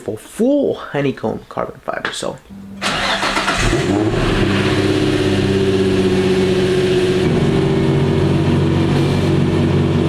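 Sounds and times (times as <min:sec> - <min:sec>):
car engine revving then idling: 0:02.8 - 0:10.0.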